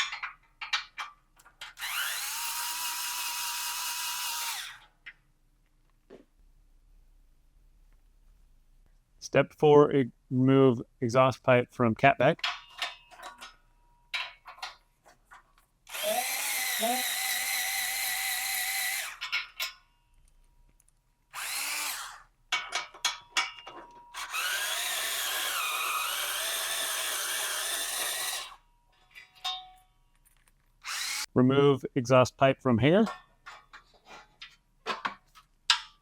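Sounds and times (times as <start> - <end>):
cordless power tool spinning bolts: 0.1 - 5.0, 15.9 - 19.8, 21.3 - 28.6, 30.8 - 31.3.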